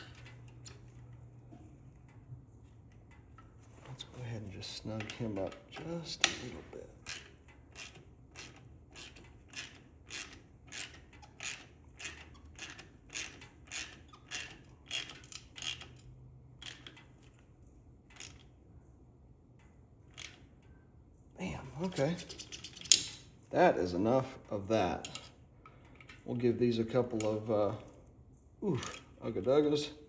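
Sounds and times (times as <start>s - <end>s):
hand ratchet clicking: 0.0s - 1.2s, 4.9s - 17.4s, 18.1s - 18.5s, 21.8s - 23.3s, 24.8s - 28.0s.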